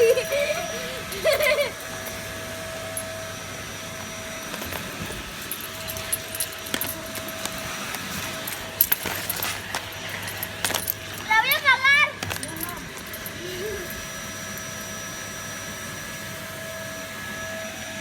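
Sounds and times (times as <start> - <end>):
light clicks and jingles: 0.0 - 3.3, 4.0 - 14.9
vacuum cleaner running: 0.0 - 18.0.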